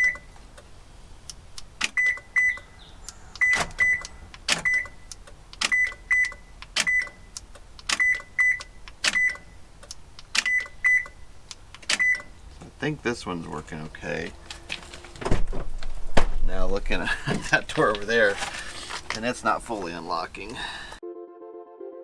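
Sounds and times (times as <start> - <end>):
power door locks clunking: 1.8 - 9.6, 14.6 - 16.5.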